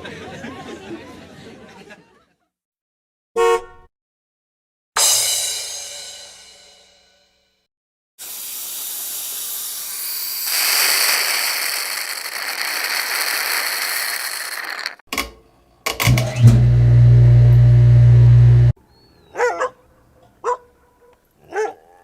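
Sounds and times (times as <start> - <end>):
steady hiss: 8.2 - 15.0
loud low-pitched hum: 16.1 - 18.7.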